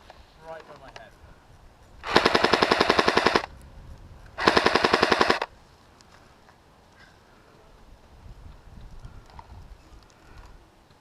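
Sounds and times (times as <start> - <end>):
airsoft gun full-auto bursts: 2.0 - 3.5, 4.4 - 5.5.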